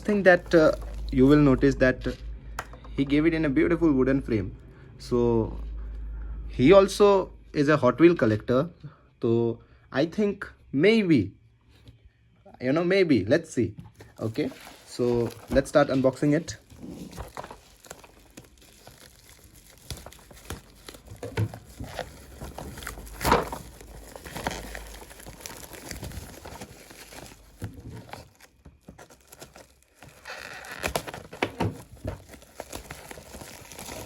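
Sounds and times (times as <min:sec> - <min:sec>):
wrapping crinkling and rustling: 0:00.0 - 0:01.8, 0:14.0 - 0:34.0.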